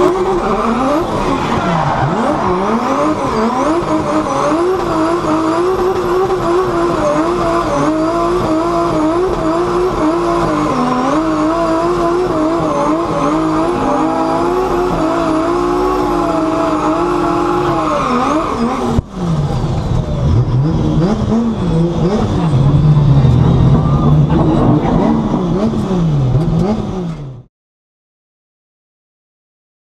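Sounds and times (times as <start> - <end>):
car engine revving: 0.0 - 27.5
lower rougher engine sound: 0.0 - 27.5
tyre squeal: 10.4 - 19.0.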